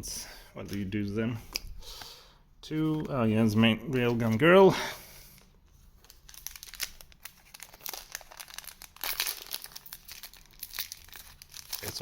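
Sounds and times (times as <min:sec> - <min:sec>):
foil wrapper crinkling: 0:05.3 - 0:12.0
wrapper tearing: 0:06.0 - 0:12.0.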